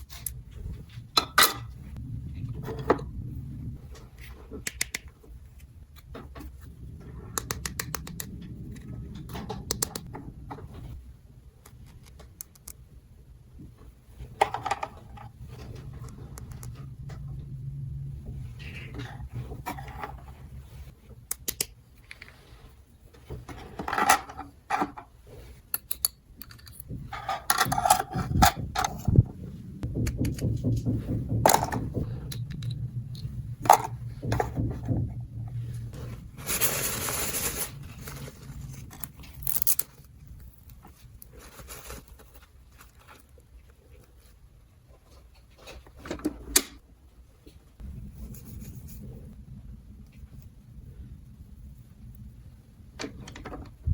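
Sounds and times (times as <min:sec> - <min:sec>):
packaging rustle: 0:36.4 - 0:40.1, 0:40.9 - 0:43.4.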